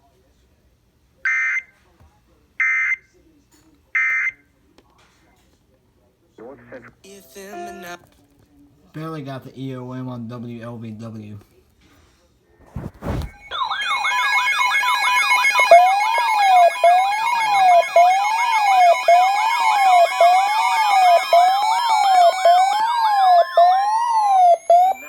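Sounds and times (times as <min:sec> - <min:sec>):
warbling siren tones: 0:12.8 - 0:25.0
yelping electronic siren: 0:13.4 - 0:25.0
wailing siren climbing in pitch: 0:13.5 - 0:25.0.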